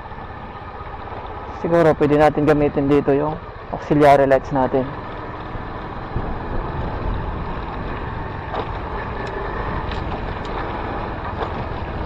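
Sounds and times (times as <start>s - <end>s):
motorcycle engine: 0.0s - 12.0s
wind rush: 6.0s - 12.0s.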